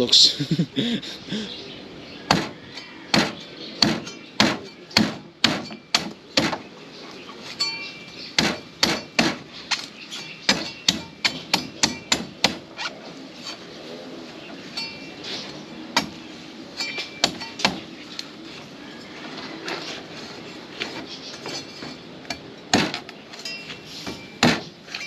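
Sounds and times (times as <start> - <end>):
machete chopping coconut husk: 2.3 - 6.6, 8.4 - 12.6, 22.3 - 23.0, 24.4 - 24.7.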